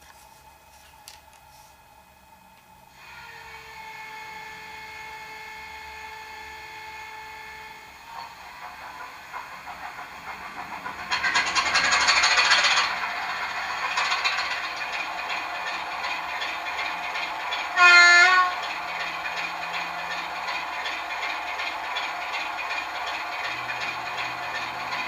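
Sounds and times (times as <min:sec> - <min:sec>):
model diesel engine clattering: 0:08.1 - 0:25.0.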